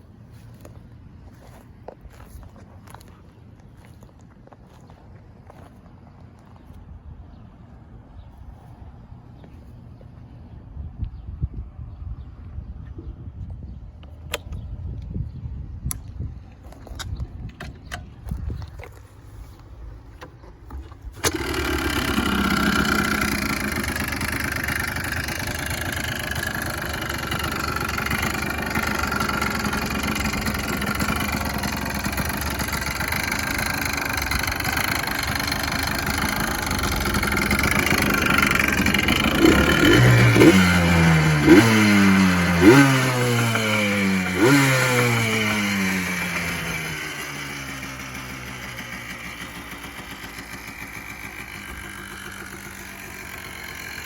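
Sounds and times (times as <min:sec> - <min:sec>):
two-stroke engine running: 0:16.7 - 0:54.0
engine revving blips: 0:21.2 - 0:54.0.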